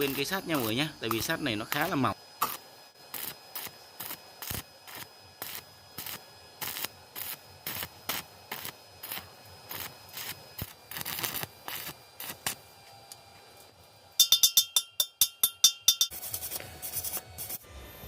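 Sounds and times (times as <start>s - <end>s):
welding arc crackling: 0.0s - 12.7s.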